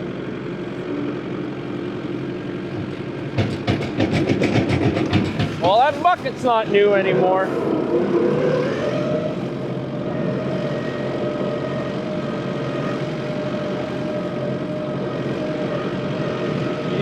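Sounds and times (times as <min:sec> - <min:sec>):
diesel engine running under load: 0:00.0 - 0:17.0
steady whine: 0:05.6 - 0:17.0.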